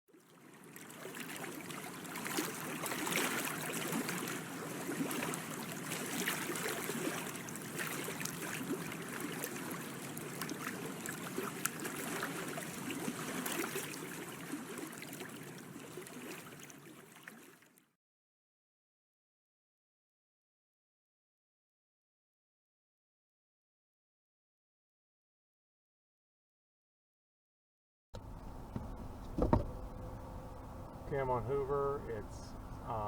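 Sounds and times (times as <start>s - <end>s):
water trickling and splashing: 0.1s - 18.0s.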